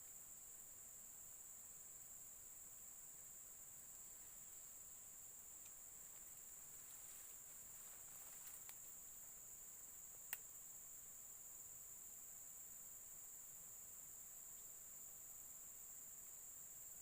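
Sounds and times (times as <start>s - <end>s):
high-pitched insect drone: 0.0s - 17.0s
small clicks: 8.2s - 8.9s.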